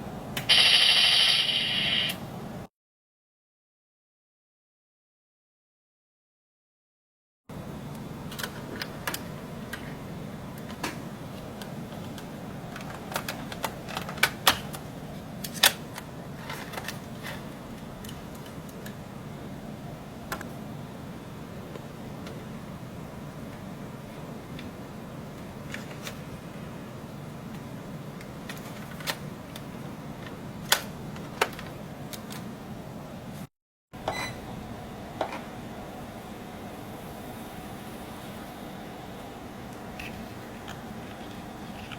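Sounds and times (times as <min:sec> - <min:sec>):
sharp clicks: 0:00.4 - 0:02.2.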